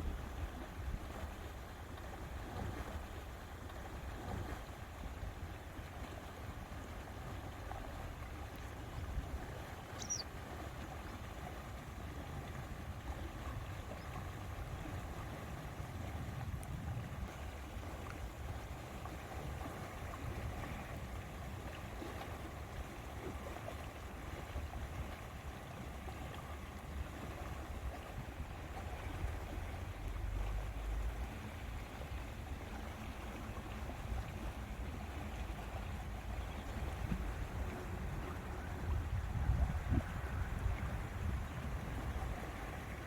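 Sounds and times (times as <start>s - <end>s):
water noise: 0.0s - 43.0s
wind rumbling on microphone: 0.0s - 43.0s.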